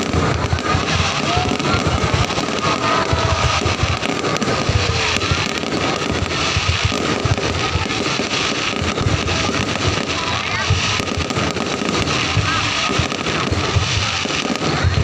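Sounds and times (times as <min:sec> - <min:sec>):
fireworks booming and crackling: 0:00.0 - 0:15.0.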